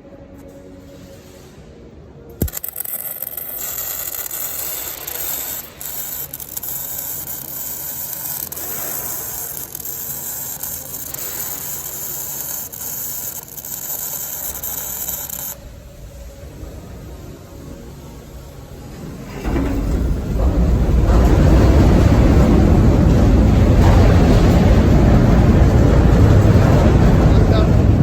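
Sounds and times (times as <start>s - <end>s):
arc welding crackling hiss: 0.8s - 15.7s.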